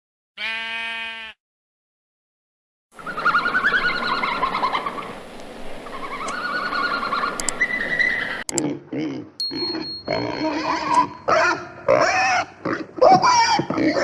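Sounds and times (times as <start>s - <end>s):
birds chirping and twittering: 3.0s - 5.2s, 5.8s - 8.5s.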